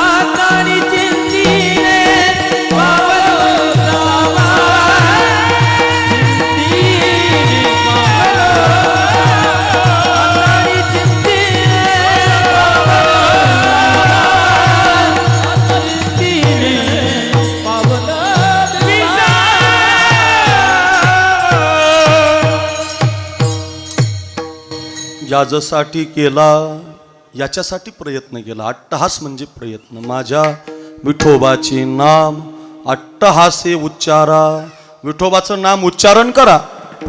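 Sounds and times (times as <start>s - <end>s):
voices singing long notes: 0.0s - 24.0s.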